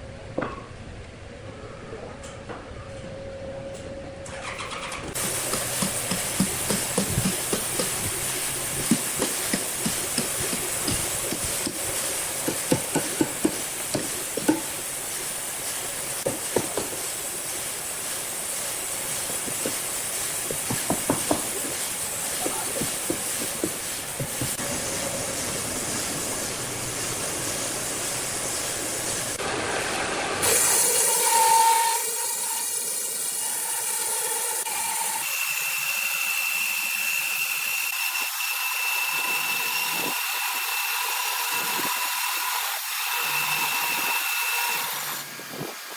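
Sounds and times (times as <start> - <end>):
sawmill machinery hissing: 4.4 - 45.9
sharp knocks: 5.5 - 8.0, 20.5 - 21.7.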